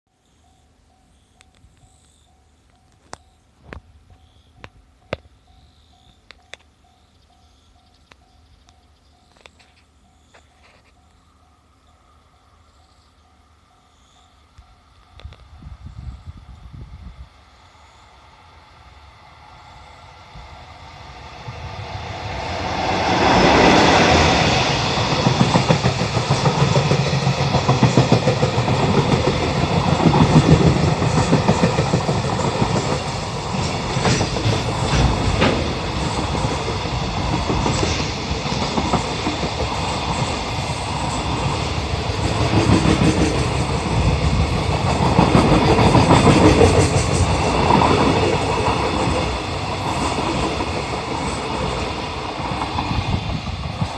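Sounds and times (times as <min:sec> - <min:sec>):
electric locomotive passing: 0:00.2 - 0:53.9
train wheels clicking over rail joints: 0:21.5 - 0:53.9.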